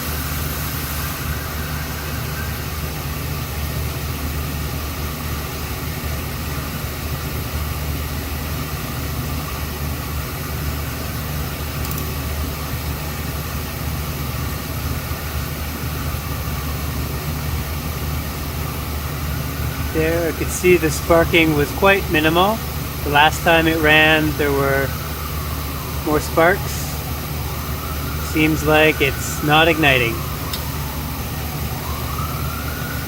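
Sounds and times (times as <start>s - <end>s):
hvac unit motor hum: 0.0s - 33.0s.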